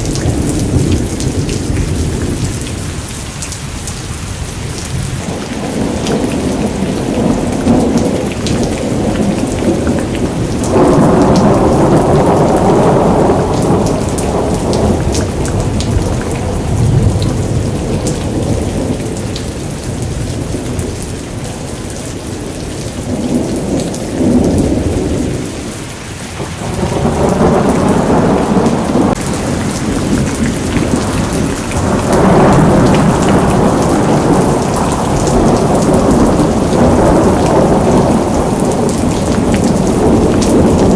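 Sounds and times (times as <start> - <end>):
heavy rain pouring: 0.0 - 40.9
raindrops ticking on a surface: 0.0 - 40.9
thunder rolling: 4.9 - 21.0, 26.4 - 40.9.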